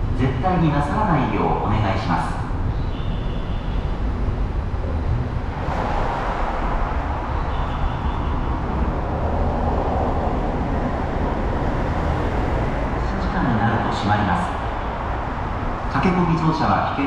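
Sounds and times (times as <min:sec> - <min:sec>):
train rumble: 0:00.0 - 0:17.0.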